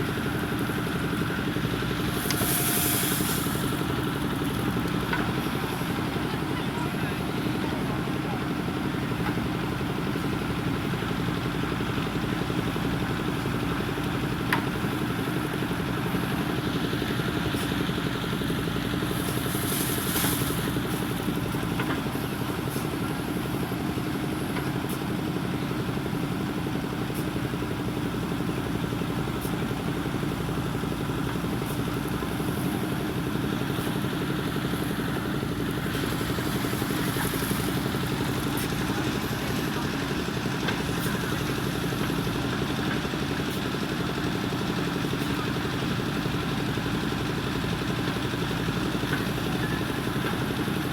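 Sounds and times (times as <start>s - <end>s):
diesel engine running: 0.0s - 50.9s
brief hiss: 2.2s - 3.7s.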